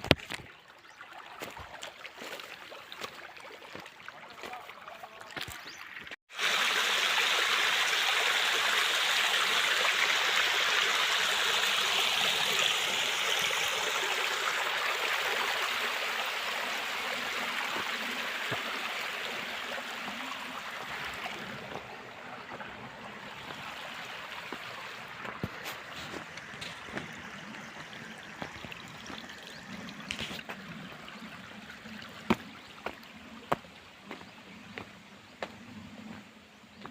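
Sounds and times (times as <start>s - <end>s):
water rushing: 0.0s - 35.6s.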